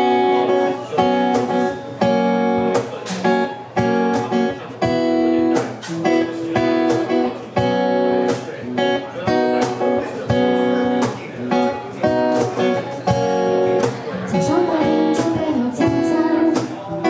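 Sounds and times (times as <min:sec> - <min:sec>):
strummed guitar chords: 0:00.0 - 0:17.0.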